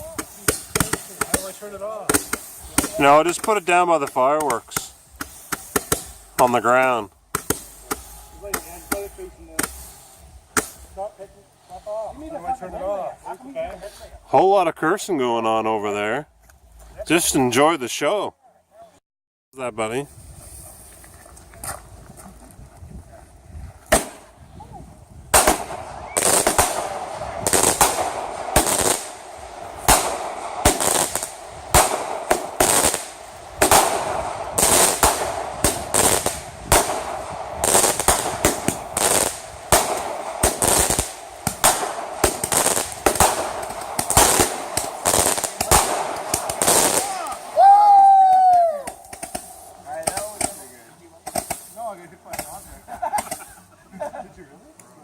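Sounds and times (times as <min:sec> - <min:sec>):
fireworks bangs: 0:00.0 - 0:11.4, 0:23.8 - 0:24.4, 0:25.2 - 0:53.6
fireworks crackling: 0:00.0 - 0:17.7, 0:23.7 - 0:55.0.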